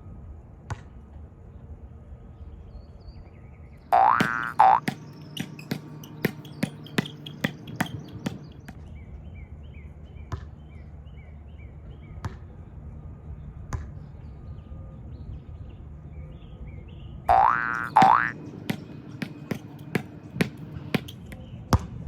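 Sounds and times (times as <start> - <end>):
basketball bouncing on hard court: 4.0 - 8.8, 17.3 - 21.9.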